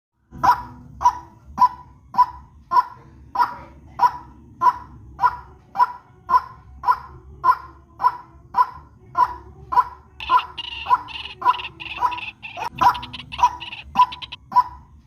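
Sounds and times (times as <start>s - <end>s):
bird honking calls: 10.2s - 14.4s.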